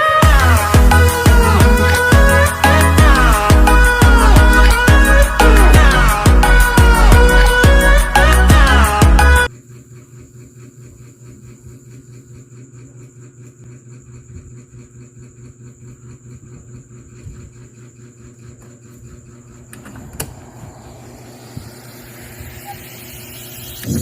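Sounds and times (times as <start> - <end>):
rising swell in pitch: 0.0 - 9.5, 19.9 - 24.0
speaker hum: 0.0 - 9.5, 19.7 - 24.0
faint pulsing beat: 0.2 - 9.4.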